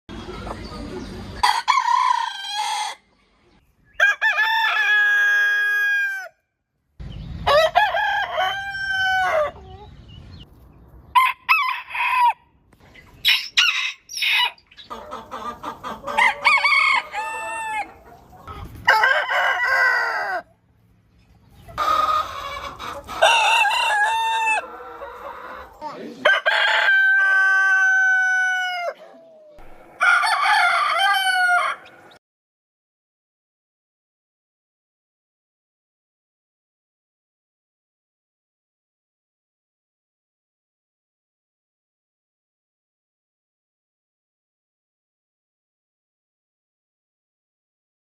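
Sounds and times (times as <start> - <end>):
chickens clucking: 0.1 - 1.6, 9.4 - 10.7, 12.8 - 32.2
roosters crowing: 1.4 - 3.1, 4.0 - 6.4, 7.4 - 9.9, 11.1 - 12.6, 13.2 - 20.6, 21.8 - 32.2.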